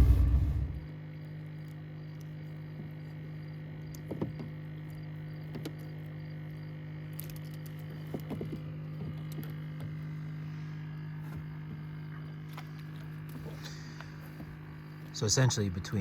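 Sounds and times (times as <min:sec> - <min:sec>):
steady low hum: 0:00.0 - 0:01.0.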